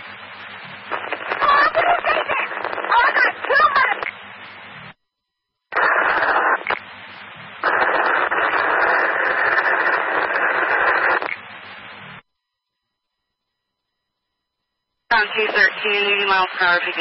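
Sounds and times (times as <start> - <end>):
radio static bursts: 0.0 - 5.0, 5.7 - 12.2, 15.1 - 17.0.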